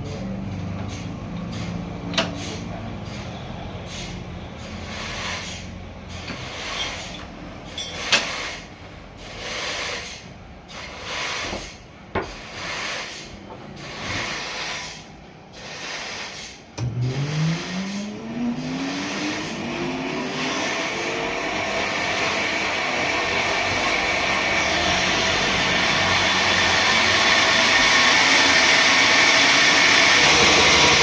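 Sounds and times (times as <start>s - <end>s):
scraping strokes on wood: 3.9s - 16.6s, 17.2s - 21.1s.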